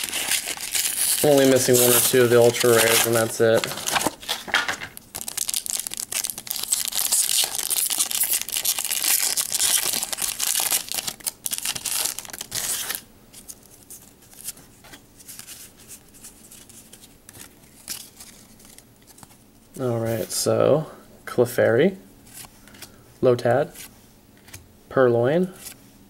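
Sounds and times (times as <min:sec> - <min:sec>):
plastic packaging tearing and crinkling: 0:00.0 - 0:14.6.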